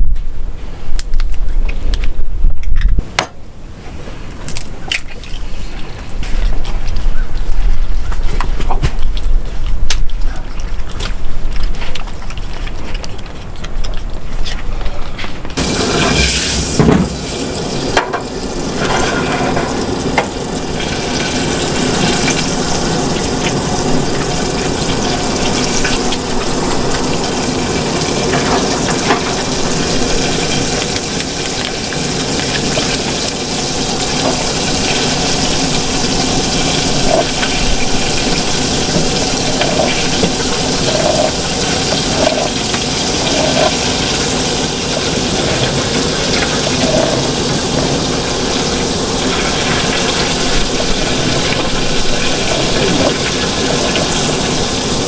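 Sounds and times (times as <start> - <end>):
water running from faucet: 15.6 - 55.0.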